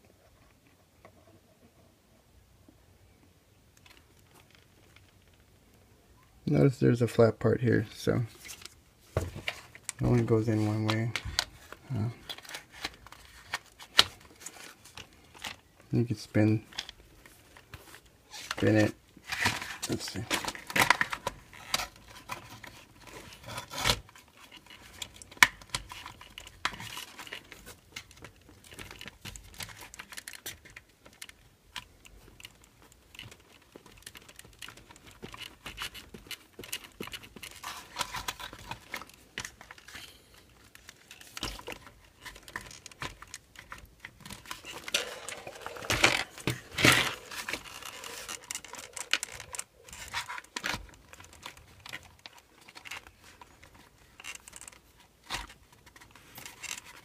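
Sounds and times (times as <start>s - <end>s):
plastic parts clicking and tapping: 18.4s - 57.0s.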